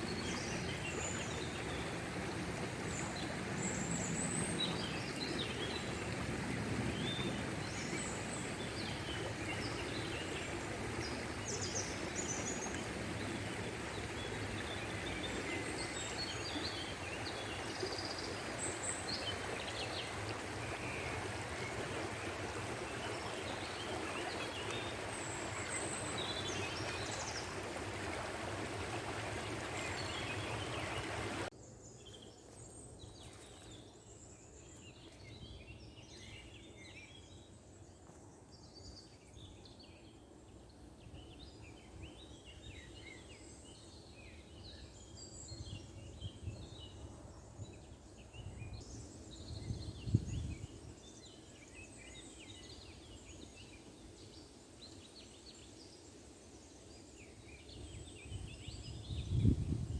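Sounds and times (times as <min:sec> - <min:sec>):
stream water running: 0:00.0 - 0:31.6, 0:32.5 - 0:40.4.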